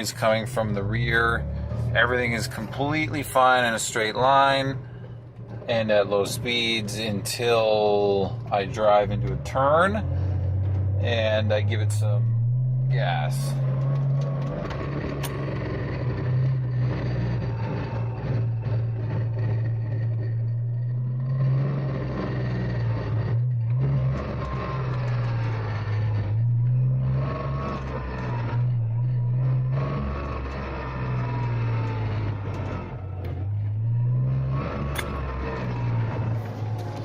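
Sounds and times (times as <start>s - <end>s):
car engine revving: 0.0s - 37.0s
grinding noise from drivetrain: 0.0s - 37.0s.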